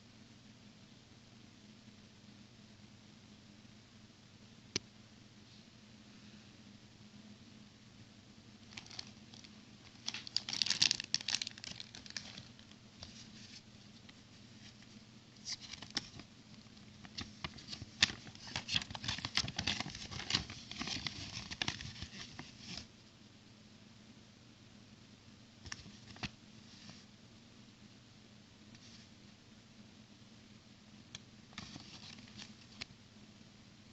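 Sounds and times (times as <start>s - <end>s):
plastic packaging crinkling: 8.6s - 13.6s, 15.4s - 22.9s, 31.5s - 32.8s.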